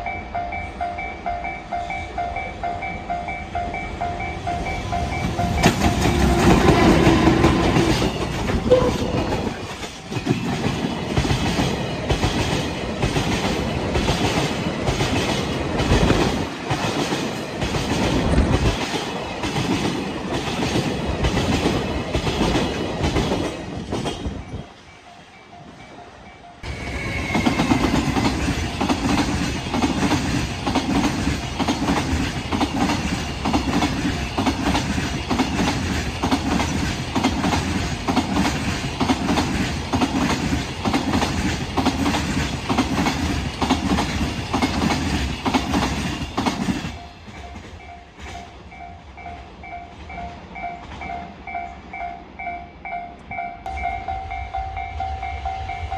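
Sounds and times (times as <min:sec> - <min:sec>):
train wheels clattering over rail joints: 0:04.9 - 0:24.6, 0:27.1 - 0:48.4.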